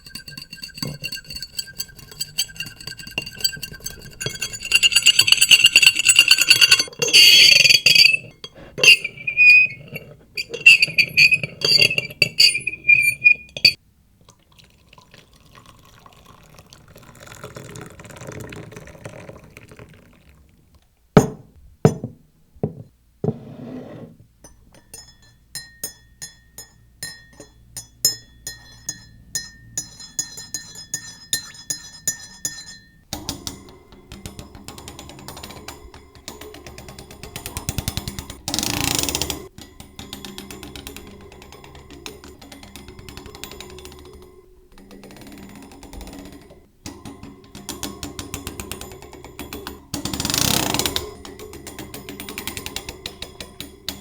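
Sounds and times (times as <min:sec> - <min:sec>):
hard objects clinking and ringing: 0:00.0 - 0:13.8, 0:38.6 - 0:39.3, 0:50.2 - 0:51.0.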